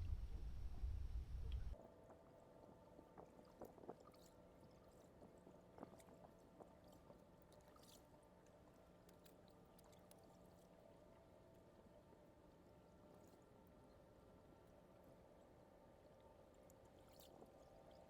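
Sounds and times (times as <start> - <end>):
low rumble: 0.0 - 1.8.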